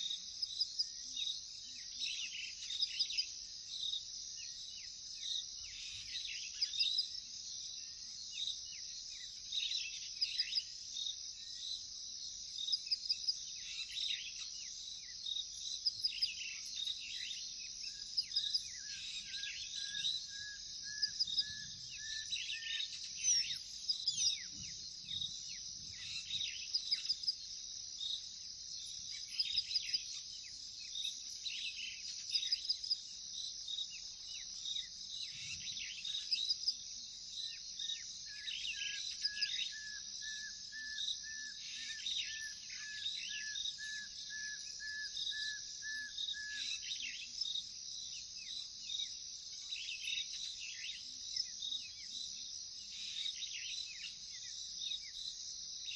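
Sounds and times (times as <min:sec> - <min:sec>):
crickets trilling: 0:00.0 - 0:55.9
birds calling and chirping: 0:04.4 - 0:07.2, 0:12.6 - 0:28.2, 0:28.8 - 0:36.8, 0:37.4 - 0:52.2.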